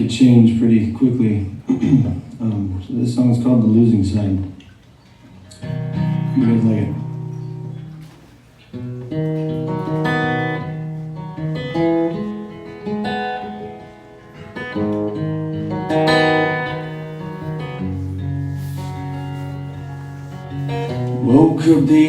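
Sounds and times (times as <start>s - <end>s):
acoustic guitar strumming: 5.3s - 22.0s.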